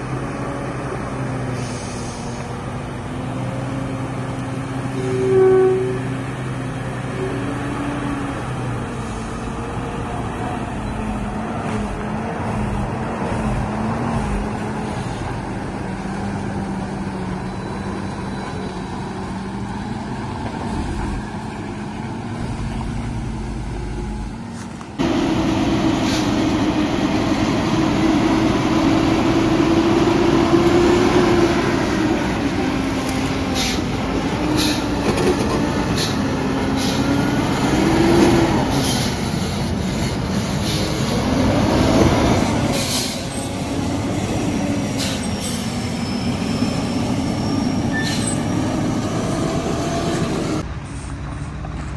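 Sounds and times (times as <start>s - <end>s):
truck diesel engine running: 6.2s - 51.3s.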